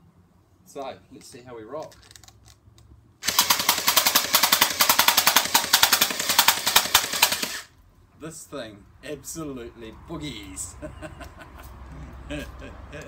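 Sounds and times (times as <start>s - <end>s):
gel blaster full-auto rattle: 3.2s - 7.7s.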